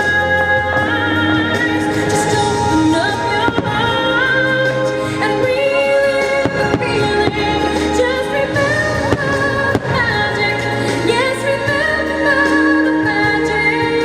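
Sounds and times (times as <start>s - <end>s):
firework bangs: 1.5s - 11.9s.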